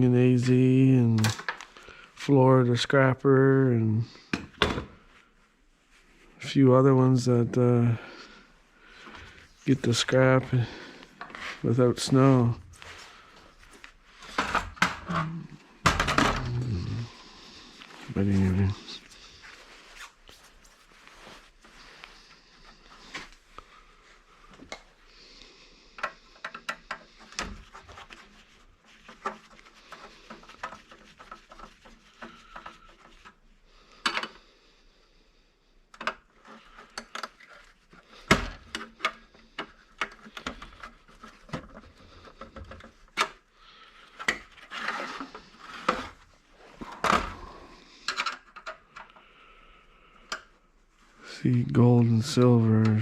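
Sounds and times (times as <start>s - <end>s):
rubbing: 27.1s - 33.6s.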